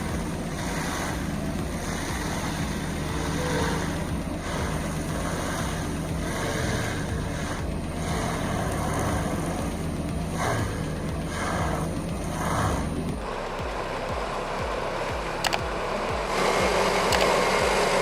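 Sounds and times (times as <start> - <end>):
heavy machine engine running: 0.0 - 18.0.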